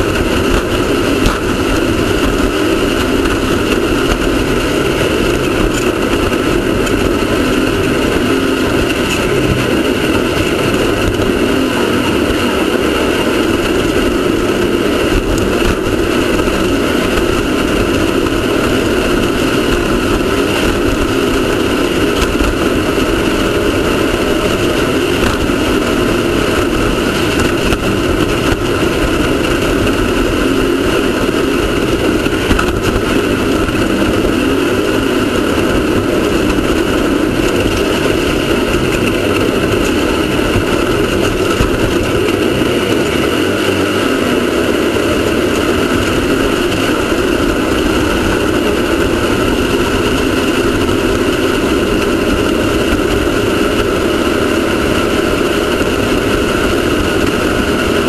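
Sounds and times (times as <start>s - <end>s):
race car engine running: 0.0s - 58.0s.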